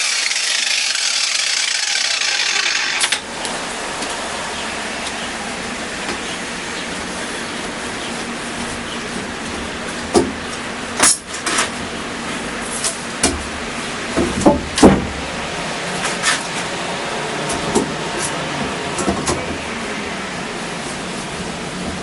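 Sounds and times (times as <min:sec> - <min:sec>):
angle grinder sanding wood: 0:00.0 - 0:03.6.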